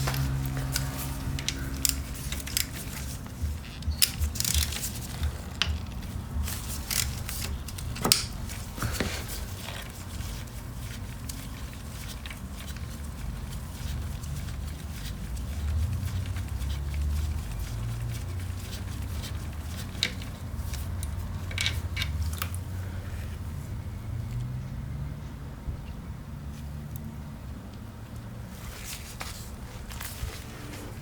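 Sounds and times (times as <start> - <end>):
hand tools clicking and scraping: 0.0 - 22.6.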